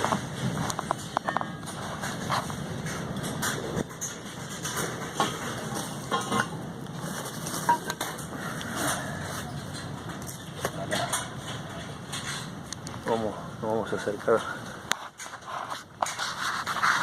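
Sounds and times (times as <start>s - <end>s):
strong wind buffeting: 0.0s - 13.6s
knocks and metallic clattering: 0.0s - 16.2s.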